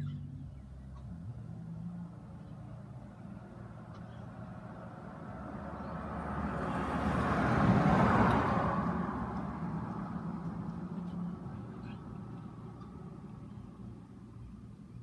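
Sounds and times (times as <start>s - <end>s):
motor vehicle passing by: 0.0s - 14.1s.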